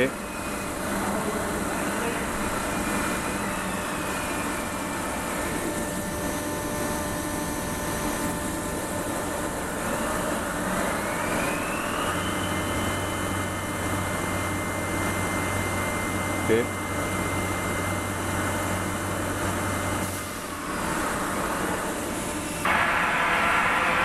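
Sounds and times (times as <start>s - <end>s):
drive whine rising in pitch: 0.0s - 19.9s
milling machine hum and hiss: 0.0s - 24.0s.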